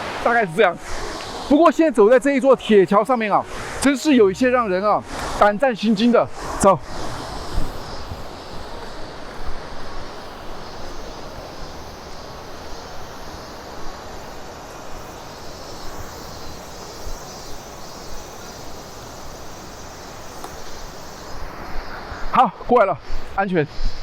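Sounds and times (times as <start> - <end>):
river rushing: 0.0 - 17.1.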